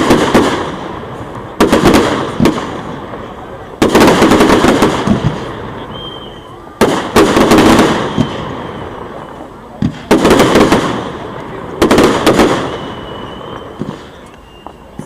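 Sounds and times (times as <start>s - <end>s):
fireworks bangs: 0.0s - 15.0s.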